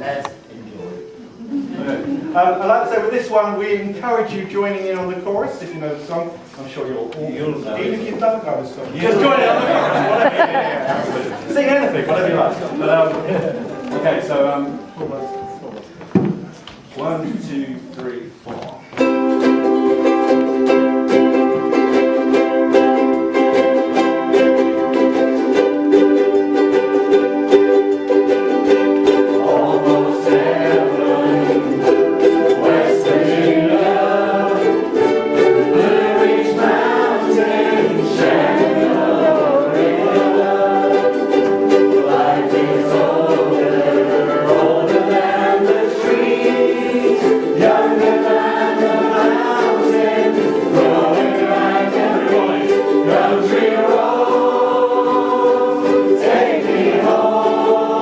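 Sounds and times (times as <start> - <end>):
ukulele ensemble strumming: 0.0 - 58.0
group of voices singing: 28.5 - 58.0.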